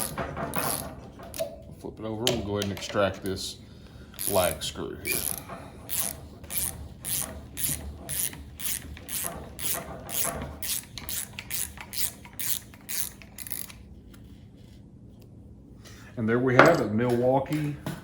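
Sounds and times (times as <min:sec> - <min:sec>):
ratchet wrench clicking: 0:04.2 - 0:13.8.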